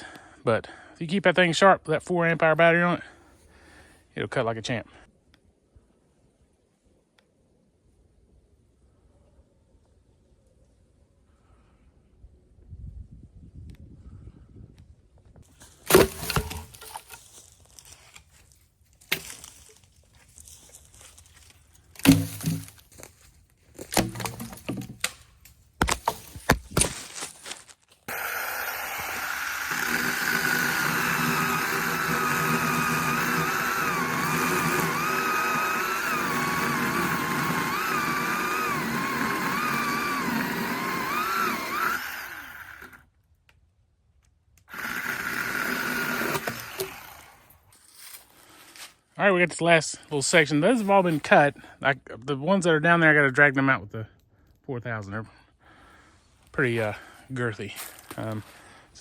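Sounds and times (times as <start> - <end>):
cordless chainsaw cutting wood: 15.9 - 17.1, 22.0 - 22.7, 23.9 - 25.2, 28.1 - 43.0, 44.6 - 47.6
knocks and handling noises: 21.9 - 28.0.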